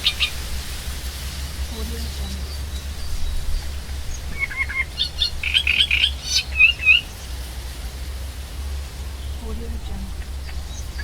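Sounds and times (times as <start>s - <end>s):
songbird chirping and trilling: 0.0s - 0.4s, 1.7s - 7.4s, 9.0s - 11.0s
low wind noise: 0.0s - 11.0s.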